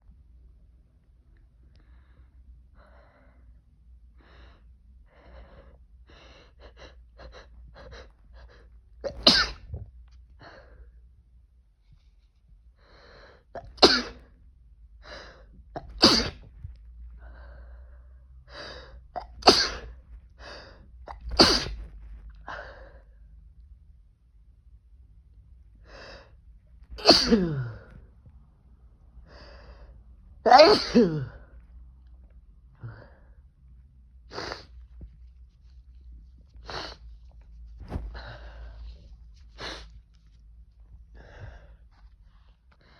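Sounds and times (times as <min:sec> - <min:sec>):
man sneezing hard: 0:13.8 - 0:14.2, 0:15.8 - 0:16.4, 0:19.4 - 0:19.8, 0:21.1 - 0:21.8, 0:27.0 - 0:27.7, 0:30.5 - 0:31.4.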